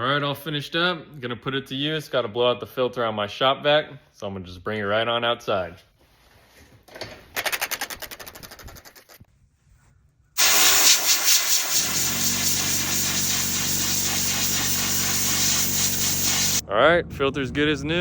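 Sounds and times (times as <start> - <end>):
air compressor motor running: 10.4 - 16.6
compressed air hissing: 10.4 - 16.6.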